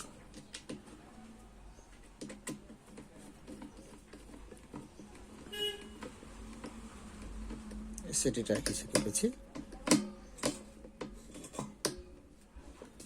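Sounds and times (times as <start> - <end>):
screwdriver clicks and knocks: 8.5 - 12.1.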